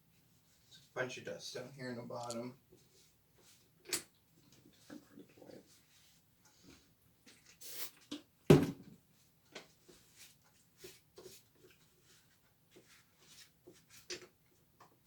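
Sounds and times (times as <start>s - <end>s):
rubbing hiss: 7.6s - 7.9s
thump: 8.5s - 8.8s.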